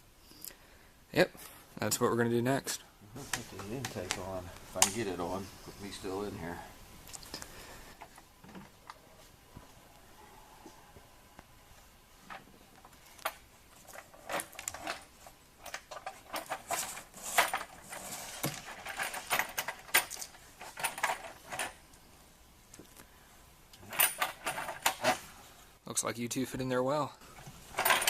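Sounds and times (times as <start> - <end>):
metal parts clicking and clattering: 12.3 - 21.8, 23.8 - 25.3, 27.6 - 28.0.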